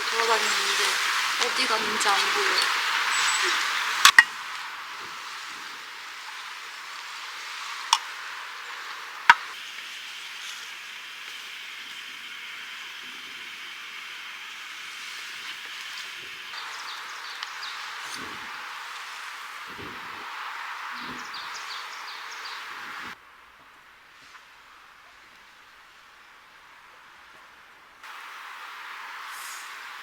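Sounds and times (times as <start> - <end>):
outdoor background hiss: 0.0 - 30.0.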